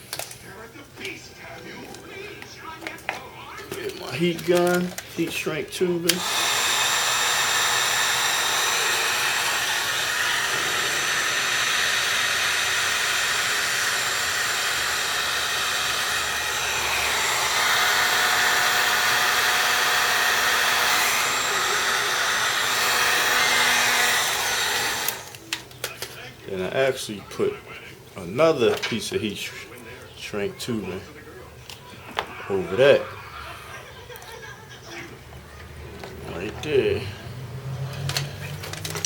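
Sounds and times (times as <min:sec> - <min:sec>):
heat gun blowing: 0:03.9 - 0:25.4.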